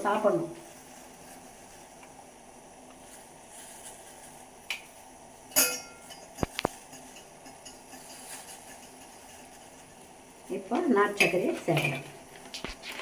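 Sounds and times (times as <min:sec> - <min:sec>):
metal utensils clinking: 0:05.5 - 0:09.3, 0:10.7 - 0:12.3.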